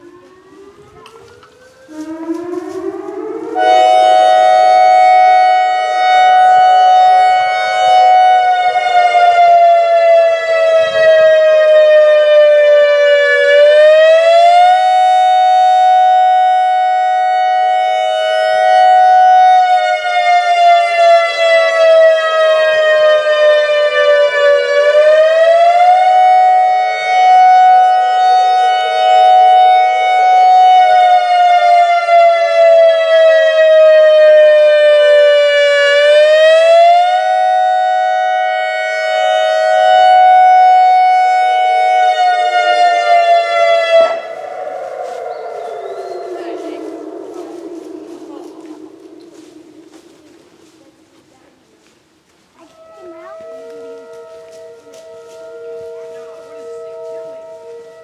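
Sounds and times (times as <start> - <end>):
electronic warning siren: 0.0 - 51.7, 52.6 - 58.0.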